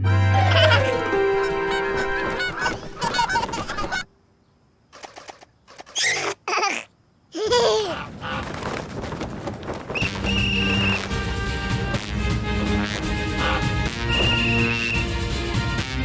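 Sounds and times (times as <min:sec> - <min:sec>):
cartoon baby laughing and babbling: 0:00.4 - 0:04.1, 0:06.0 - 0:08.1.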